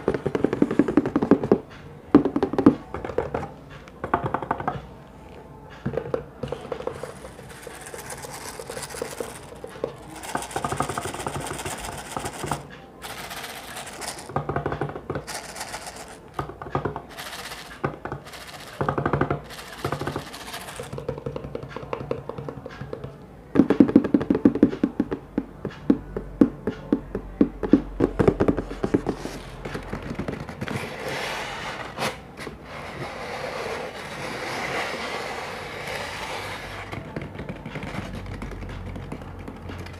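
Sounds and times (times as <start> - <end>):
fingers tapping on objects: 0.0 - 4.8, 5.8 - 30.8, 36.9 - 39.9
fingers scratching on objects: 6.4 - 14.4, 15.2 - 16.4, 17.0 - 21.0, 32.8 - 39.9.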